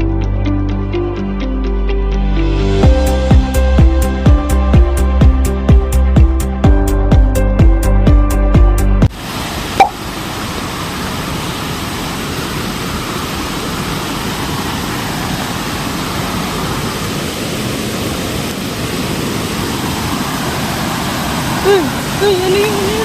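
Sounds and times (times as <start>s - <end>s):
waterfall rushing: 9.1s - 23.0s.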